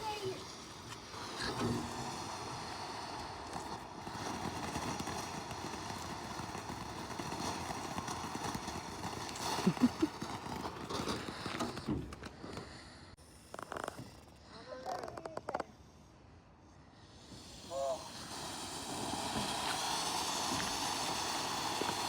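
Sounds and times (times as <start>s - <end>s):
firework pops: 0.0s - 12.5s, 17.2s - 22.0s
firework crackling hiss: 0.0s - 14.5s, 16.9s - 22.0s.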